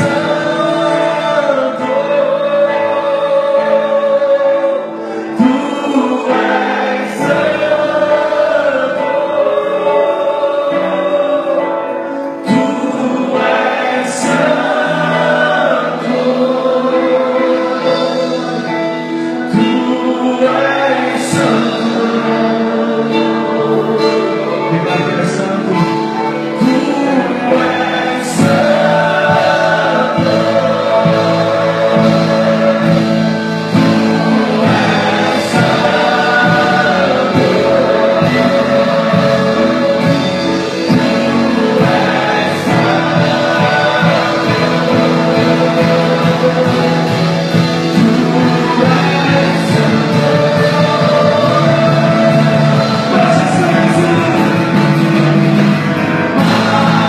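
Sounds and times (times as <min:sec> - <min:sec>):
keyboard chords: 0:00.0 - 0:57.0
voices singing together: 0:00.0 - 0:57.0.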